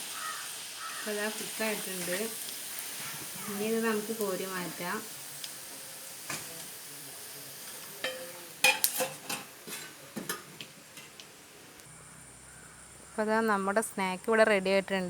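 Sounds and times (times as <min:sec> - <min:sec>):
fritters sizzling in hot oil: 0:00.0 - 0:11.8
utensil clinking against pan: 0:07.7 - 0:11.1.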